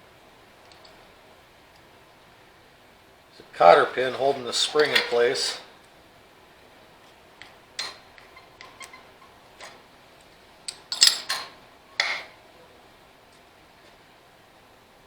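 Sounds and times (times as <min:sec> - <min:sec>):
hand tools clinking against metal: 0:04.2 - 0:05.6, 0:10.7 - 0:12.3.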